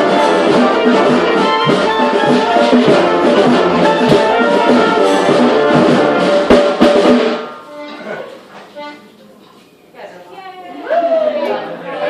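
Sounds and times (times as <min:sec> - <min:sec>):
trombones and trumpets: 0:00.0 - 0:08.0
steady percussion beat: 0:00.0 - 0:08.2.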